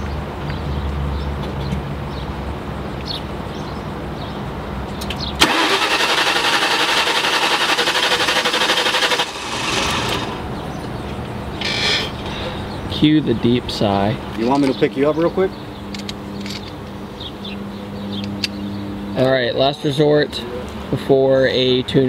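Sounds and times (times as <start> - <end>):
car starter cranking: 5.4 - 10.4.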